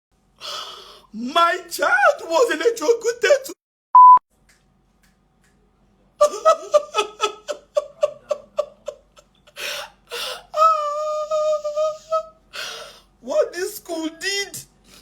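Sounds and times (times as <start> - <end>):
woman sobbing: 6.2 - 13.1.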